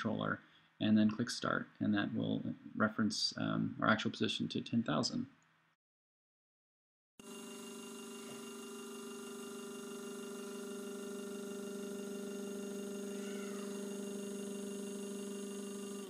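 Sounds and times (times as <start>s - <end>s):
stepper motor whine: 7.2s - 16.0s.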